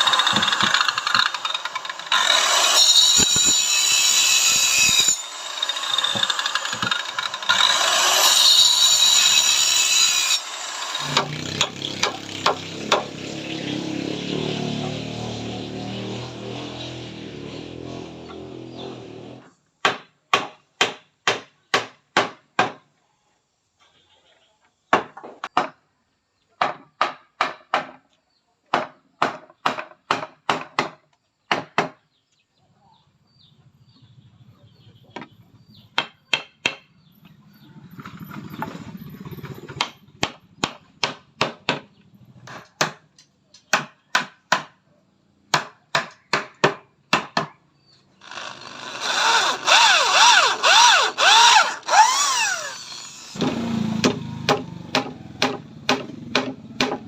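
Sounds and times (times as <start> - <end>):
power tool running: 0.0 - 19.4, 48.2 - 57.0.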